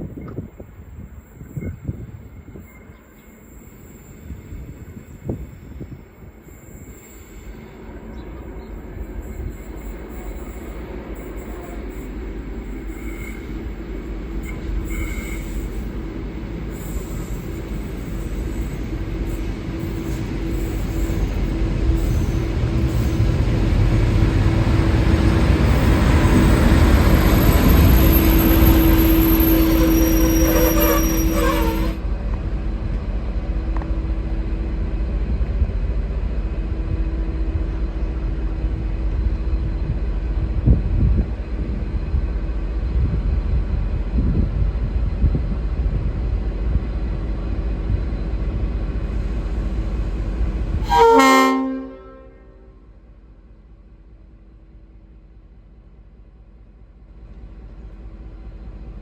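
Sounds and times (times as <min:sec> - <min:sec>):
diesel train arriving: 0:00.0 - 0:59.0
standing train humming: 0:00.0 - 0:59.0
brake squeal: 0:09.2 - 0:13.8, 0:14.4 - 0:16.0, 0:16.7 - 0:23.3, 0:25.6 - 0:32.0.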